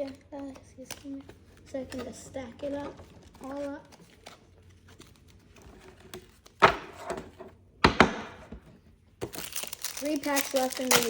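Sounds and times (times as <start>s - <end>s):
cards knocked on a table: 7.8s - 8.7s
wrapper crinkling: 9.2s - 11.0s.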